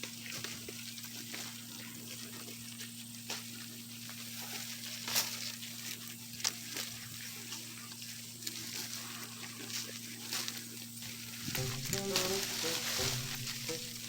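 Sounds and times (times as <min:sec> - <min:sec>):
goats chewing leaves: 0:00.0 - 0:14.0
twigs snapping: 0:11.5 - 0:14.0.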